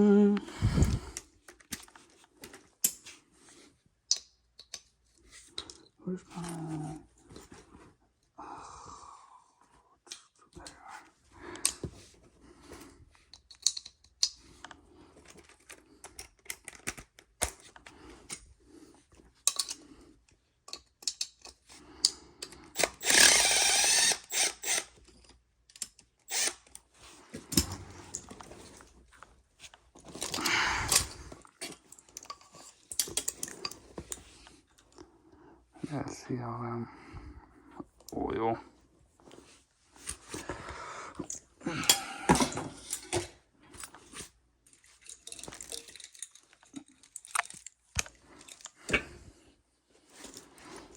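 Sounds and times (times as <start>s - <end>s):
cordless power driver running: 22.8s - 24.9s, 26.3s - 26.6s.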